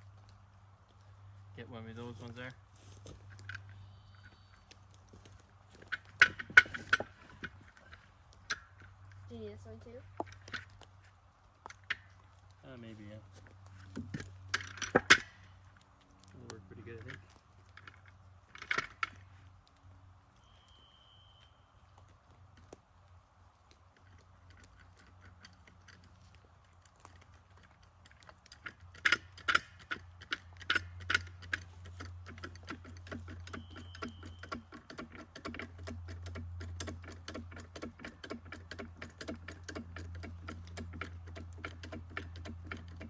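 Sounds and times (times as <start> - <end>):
low steady hum: 0.0 - 43.0
rapid clicking: 23.5 - 43.0.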